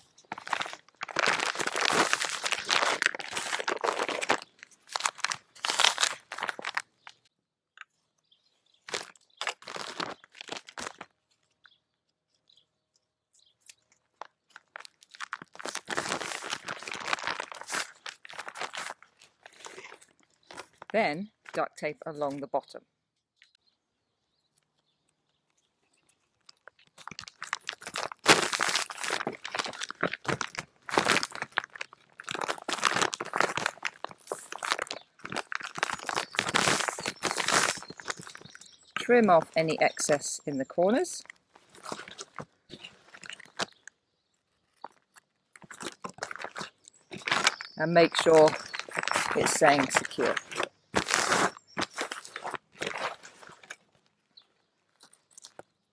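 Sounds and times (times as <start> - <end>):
plastic bag crinkling: 0.0 - 7.3, 8.8 - 11.5, 14.0 - 21.0, 25.6 - 40.1, 41.1 - 55.8
duct tape ripping off roll: 0.4 - 6.8, 27.4 - 38.3, 48.6 - 53.4.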